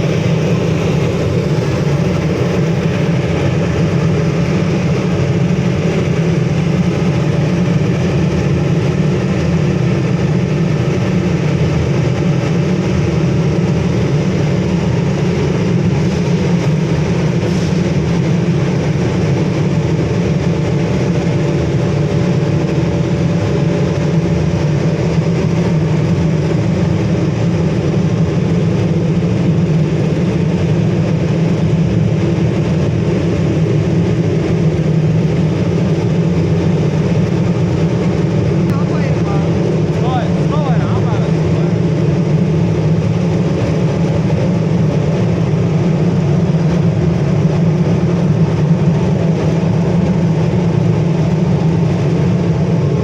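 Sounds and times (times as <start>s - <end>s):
faint blower hum: 0.0s - 20.0s, 33.1s - 53.0s
furnace burner rushing: 0.0s - 53.0s.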